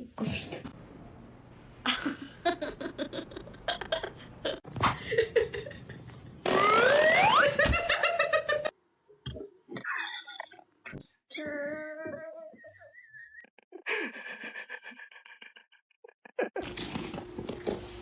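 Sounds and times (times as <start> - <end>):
person laughing: 1.9 - 6.4, 7.4 - 8.7, 12.3 - 16.8.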